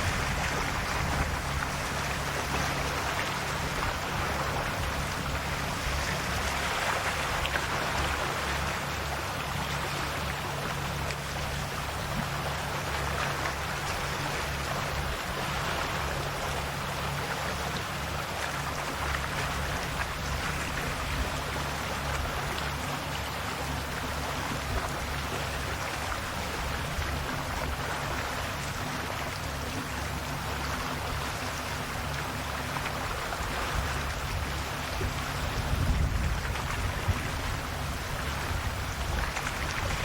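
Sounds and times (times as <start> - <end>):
low steady hum: 0.0 - 40.0
sea waves lapping at shore: 0.0 - 40.0.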